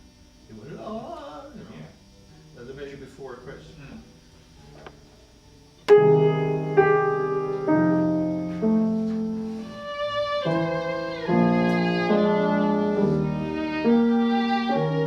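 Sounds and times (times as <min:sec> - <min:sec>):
piano chords: 0:05.8 - 0:15.0
viola playing with vibrato: 0:05.9 - 0:15.0.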